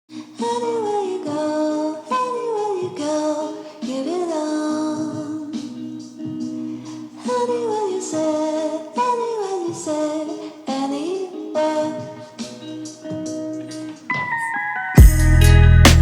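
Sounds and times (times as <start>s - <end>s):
woman singing: 0.2s - 13.3s
steady musical accompaniment: 12.4s - 16.0s.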